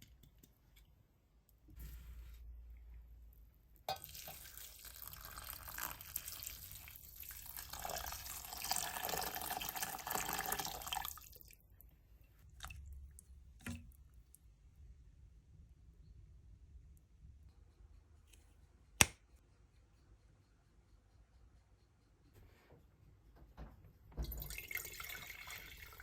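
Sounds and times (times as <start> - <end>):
water running: 3.9 - 11.5, 24.2 - 26.0.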